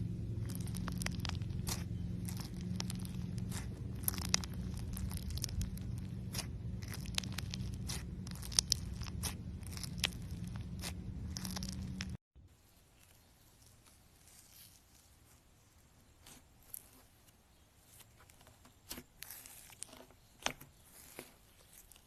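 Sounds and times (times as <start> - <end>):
slime crackling and popping: 0.2 - 12.2.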